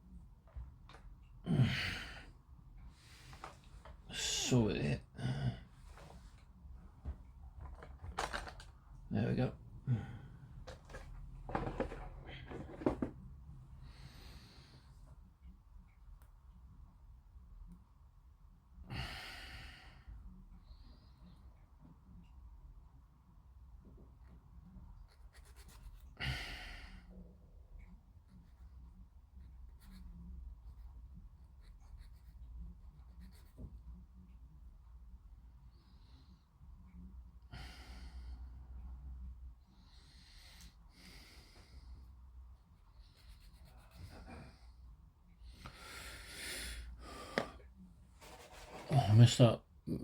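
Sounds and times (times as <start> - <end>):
person sighing: 1.4 - 2.3, 9.8 - 10.4
small parts rustling: 7.6 - 8.8.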